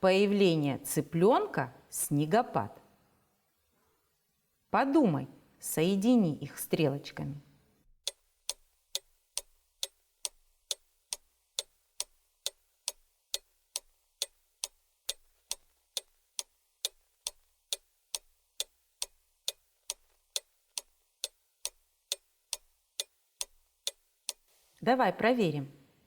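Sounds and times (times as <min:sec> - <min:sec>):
clock ticking: 0:08.0 - 0:24.5.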